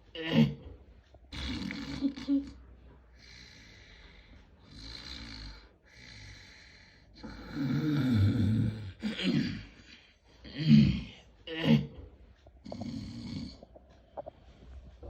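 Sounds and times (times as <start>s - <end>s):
person snoring: 1.3s - 2.6s, 3.2s - 11.9s, 12.6s - 14.3s.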